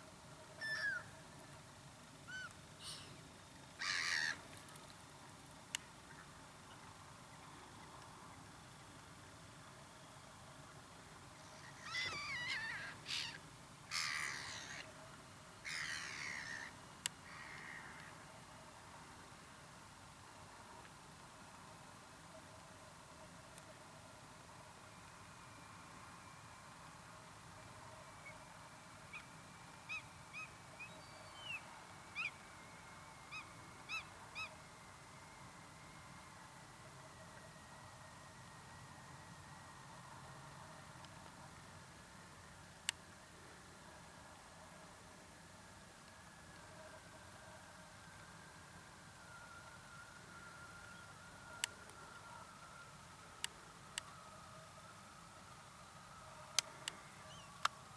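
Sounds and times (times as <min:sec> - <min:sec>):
redshank piping calls: 0:00.6 - 0:01.1, 0:02.3 - 0:03.2, 0:03.8 - 0:04.4, 0:29.9 - 0:32.4, 0:33.3 - 0:34.6, 0:57.2 - 0:57.6
harsh rasping bird calls: 0:03.8 - 0:04.4.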